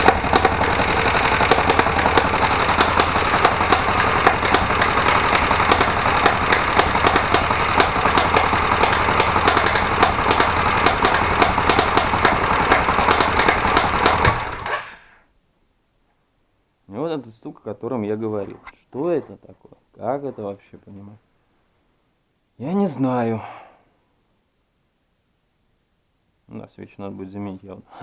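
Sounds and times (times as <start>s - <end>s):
sharp ringing engine knocks: 0.0s - 14.6s
motorcycle engine idling: 0.0s - 14.7s.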